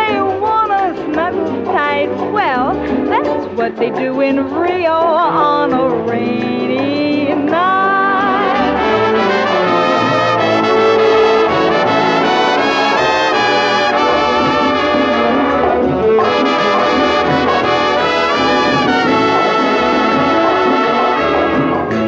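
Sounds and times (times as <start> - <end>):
dance band brass section: 8.4 - 22.0.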